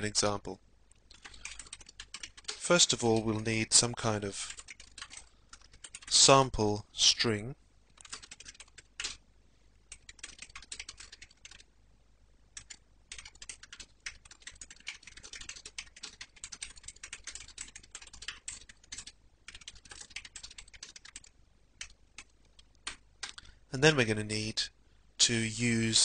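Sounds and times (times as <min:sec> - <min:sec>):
typing on computer keyboard: 0:01.1 - 0:03.4, 0:04.4 - 0:06.1, 0:08.0 - 0:09.2, 0:09.9 - 0:11.7, 0:12.6 - 0:23.4.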